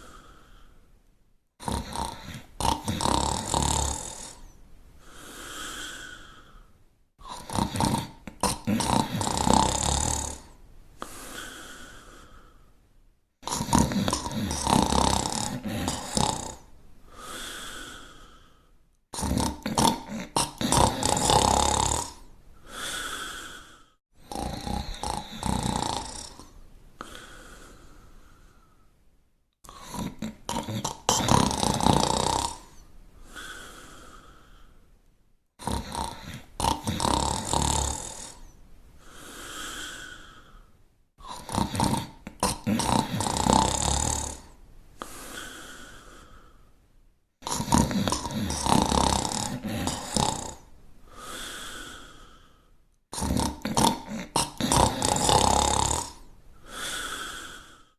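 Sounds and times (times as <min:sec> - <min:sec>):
loud rattling snoring: 0:01.6 - 0:04.5, 0:07.2 - 0:10.6, 0:13.4 - 0:16.7, 0:19.2 - 0:23.6, 0:24.2 - 0:27.3, 0:29.7 - 0:32.8, 0:35.6 - 0:38.5, 0:41.2 - 0:44.6, 0:47.4 - 0:50.7, 0:53.1 - 0:56.2.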